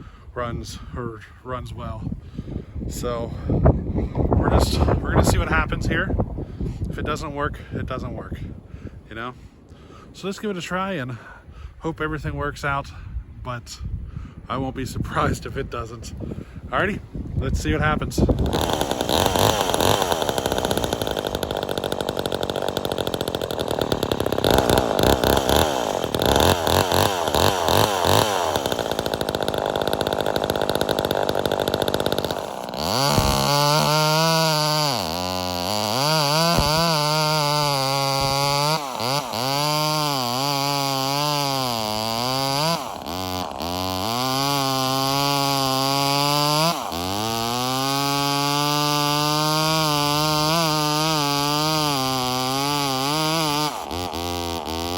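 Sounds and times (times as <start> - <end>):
chainsaw running and revving: 18.2 - 54.9.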